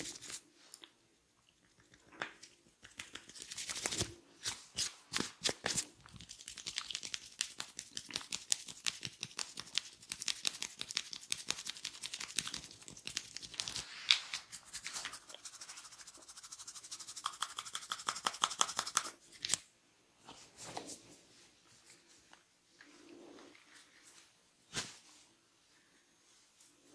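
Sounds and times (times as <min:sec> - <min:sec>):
fingers crackling on hair: 0:05.4 - 0:13.8, 0:14.7 - 0:19.6.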